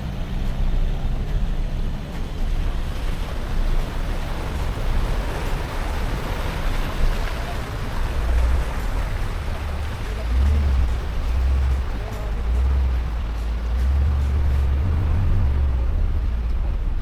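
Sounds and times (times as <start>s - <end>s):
steady rushing noise: 0.0s - 17.0s
vehicle engine rumble: 0.0s - 17.0s.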